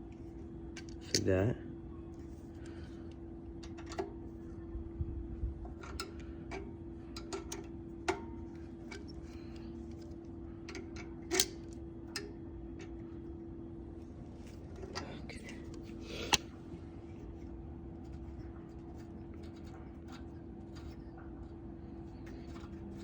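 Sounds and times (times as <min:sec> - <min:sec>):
faint steady hum: 0:00.0 - 0:23.0.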